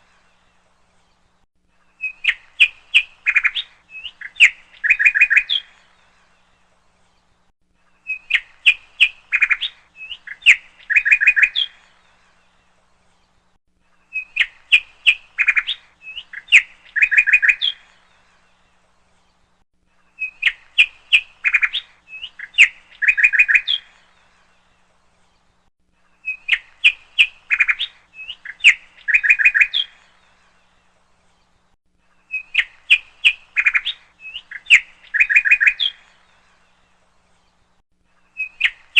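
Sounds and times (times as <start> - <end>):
bird chirping: 0.0 - 38.9.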